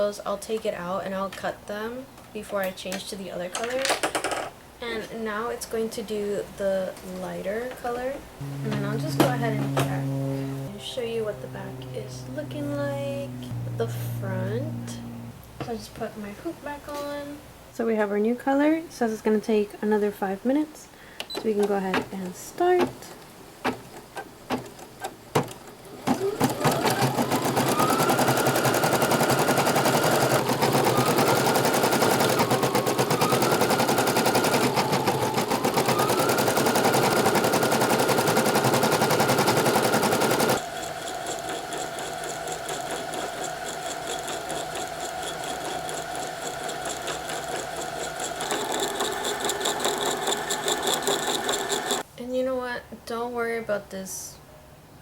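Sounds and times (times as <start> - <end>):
embroidery machine stitching: 25.4 - 52.0.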